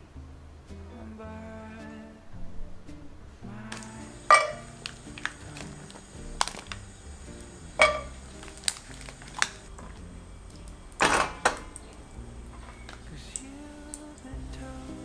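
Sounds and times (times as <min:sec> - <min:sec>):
soft background music: 0:00.0 - 0:15.0
household items clinking: 0:03.7 - 0:10.0, 0:11.0 - 0:13.5.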